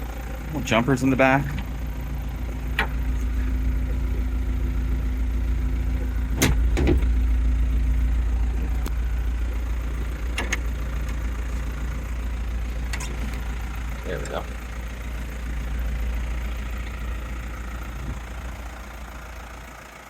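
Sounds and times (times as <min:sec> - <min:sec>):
diesel engine idling: 0:00.0 - 0:20.0
sharp knocks and clicks: 0:02.7 - 0:03.0, 0:06.0 - 0:07.2, 0:10.3 - 0:11.2.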